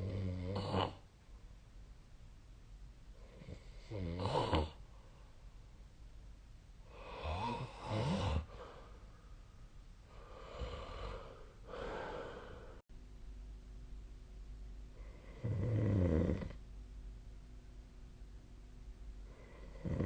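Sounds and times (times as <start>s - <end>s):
person snoring: 0.0s - 1.0s, 3.2s - 4.8s, 6.9s - 9.0s, 10.1s - 12.8s, 15.0s - 16.6s, 19.3s - 20.0s.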